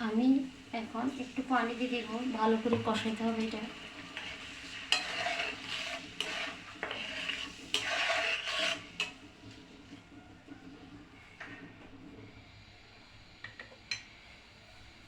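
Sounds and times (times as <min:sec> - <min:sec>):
faint sizzle: 0:00.0 - 0:15.0
spatula scraping a frying pan: 0:01.2 - 0:10.0.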